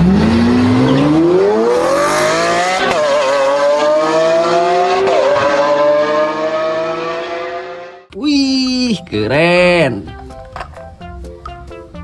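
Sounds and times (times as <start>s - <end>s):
race car engine accelerating: 0.0s - 8.0s.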